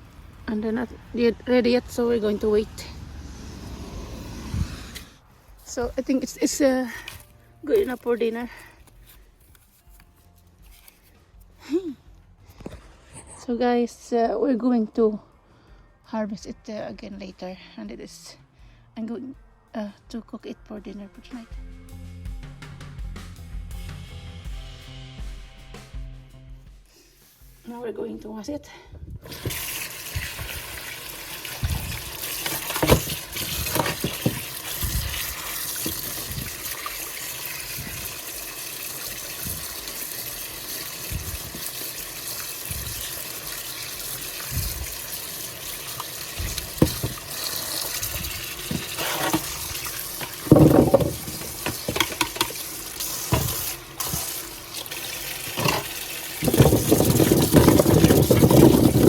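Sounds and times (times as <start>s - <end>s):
tap water running: 29.2s - 59.0s
potatoes knocking: 31.6s - 36.6s, 46.4s - 54.4s, 55.6s - 59.0s.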